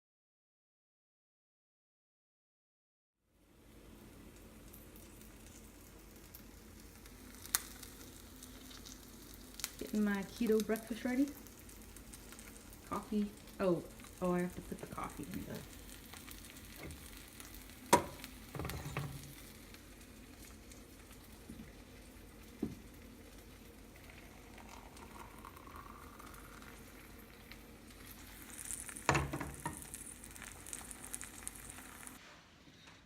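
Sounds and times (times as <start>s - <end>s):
food sizzling in a pan: 3.4s - 32.3s
sharp knocks and clatters: 17.9s - 19.3s.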